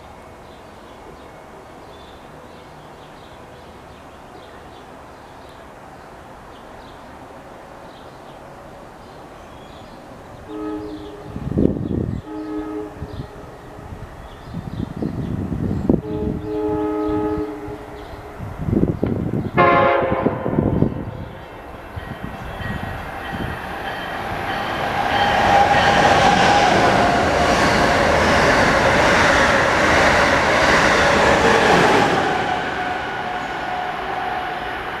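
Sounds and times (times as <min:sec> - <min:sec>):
train passing at speed: 0:00.0 - 0:35.0
train horn blast: 0:10.4 - 0:11.5, 0:12.2 - 0:13.5, 0:16.0 - 0:18.1, 0:19.6 - 0:21.3.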